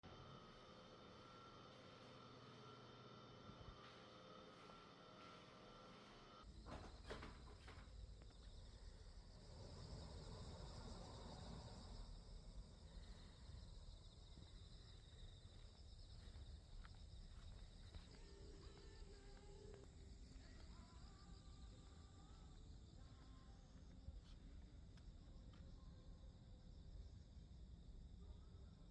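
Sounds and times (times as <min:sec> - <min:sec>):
insects chirring: 0:05.9 - 0:28.9.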